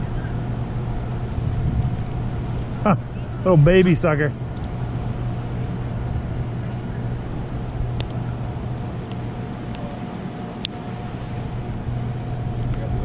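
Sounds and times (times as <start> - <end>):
low motor hum: 0.0 - 13.0
outdoor background noise: 0.0 - 13.0
faint high ticks: 8.0 - 8.2.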